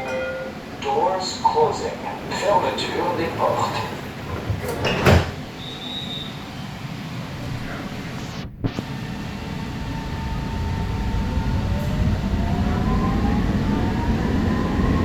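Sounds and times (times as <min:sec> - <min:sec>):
train knock: 0:00.0 - 0:06.5
train rumbling: 0:00.0 - 0:15.0
traction motors whining: 0:01.8 - 0:15.0.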